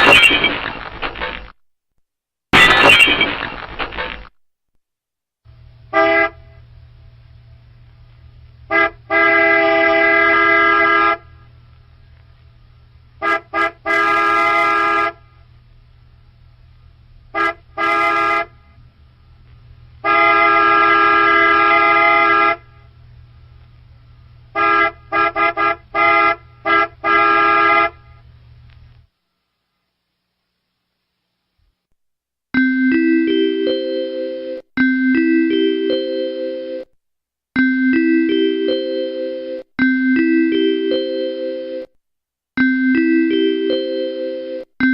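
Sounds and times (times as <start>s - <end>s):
car horn honking: 5.9s - 6.6s, 8.7s - 11.4s, 13.2s - 15.3s, 17.3s - 18.7s, 20.0s - 22.8s, 24.5s - 28.2s
steady low hum: 18.5s - 20.1s.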